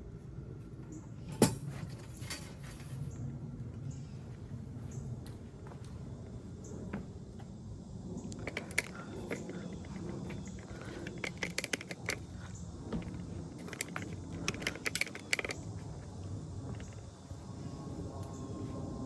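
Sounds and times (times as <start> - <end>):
metal poles clicking and rattling: 8.4 - 12.4, 13.0 - 15.7.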